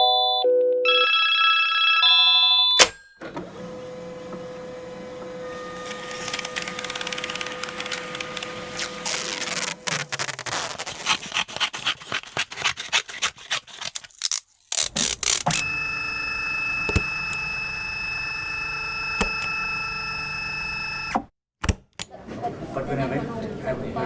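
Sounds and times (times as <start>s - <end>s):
office machine whining: 2.8s - 10.7s, 14.8s - 21.3s
rapid mechanical clicking: 5.8s - 8.6s.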